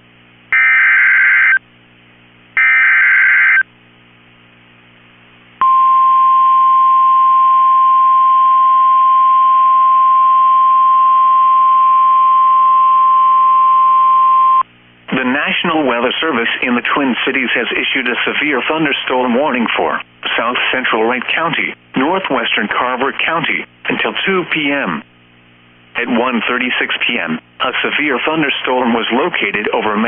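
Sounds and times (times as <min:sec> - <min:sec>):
steady warning alarm tone: 0:00.6 - 0:01.6, 0:02.6 - 0:03.6.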